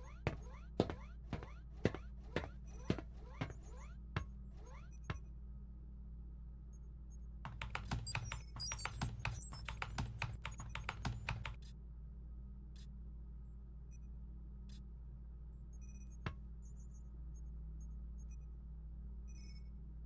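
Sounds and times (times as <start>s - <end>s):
faint high electronic chirps: 7.5s - 11.6s
keyboard typing clicks: 7.5s - 11.6s.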